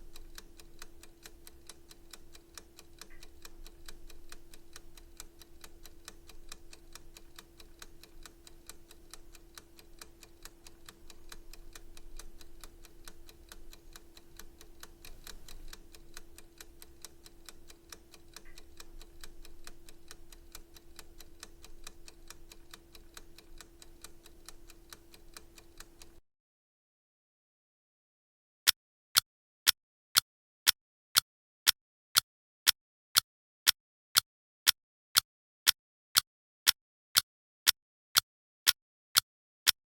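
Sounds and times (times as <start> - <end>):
clock ticking: 0.0 - 26.2.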